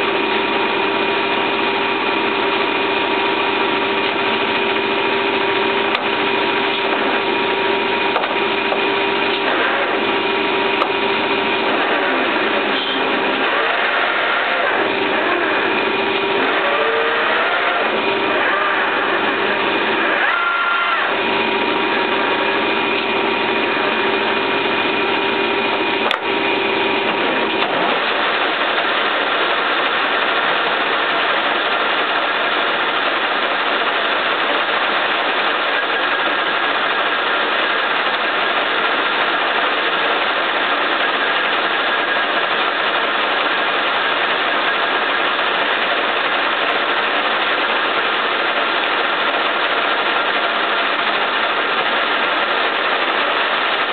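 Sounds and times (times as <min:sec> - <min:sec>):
steady tonal whine: 0:00.0 - 0:30.3
lathe running: 0:00.0 - 0:53.9.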